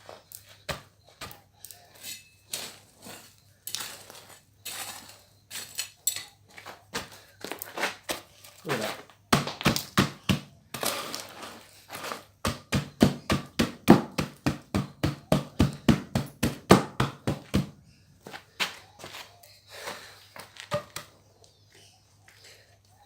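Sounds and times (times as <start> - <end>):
dirt rammed with dull thuds: 0.0 - 5.1, 6.5 - 21.2
scraping: 0.0 - 9.1, 10.7 - 12.4.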